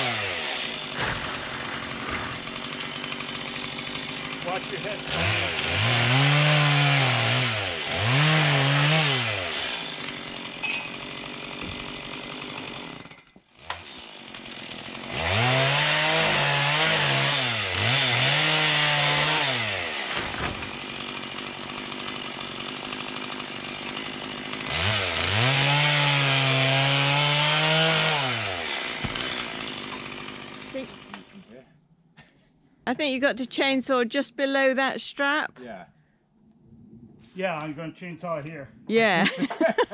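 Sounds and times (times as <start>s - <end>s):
chainsaw revving: 0.0s - 31.5s.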